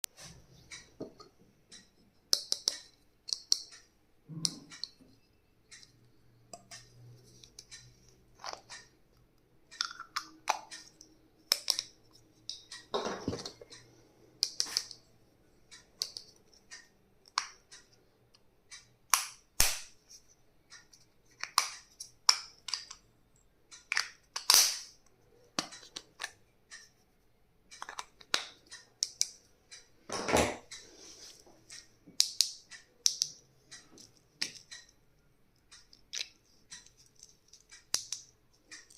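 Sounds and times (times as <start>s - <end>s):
clicks and taps: 0.0s - 15.0s, 15.7s - 23.1s, 27.7s - 30.8s, 31.5s - 35.0s, 35.6s - 38.9s.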